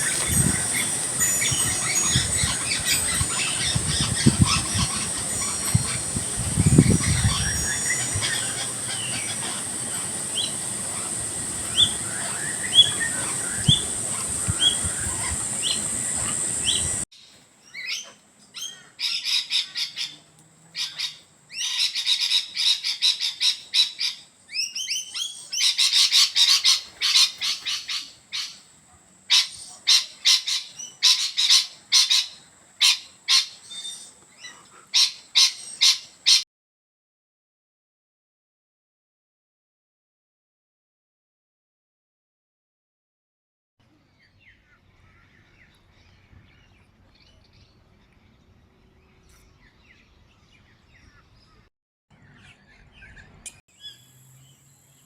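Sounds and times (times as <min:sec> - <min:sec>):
bird rising chirps: 0:00.0 - 0:17.0
steady high hiss: 0:00.0 - 0:36.4.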